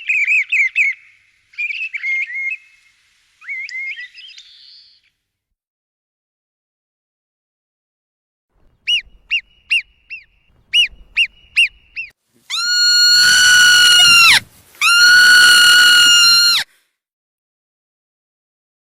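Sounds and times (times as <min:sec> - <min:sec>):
long high-pitched animal calls: 0:10.8 - 0:16.7.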